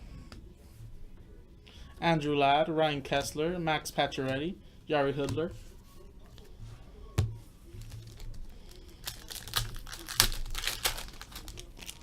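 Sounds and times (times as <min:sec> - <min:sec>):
crackles: 0:07.8 - 0:12.0
foil wrapper crinkling: 0:07.8 - 0:12.0.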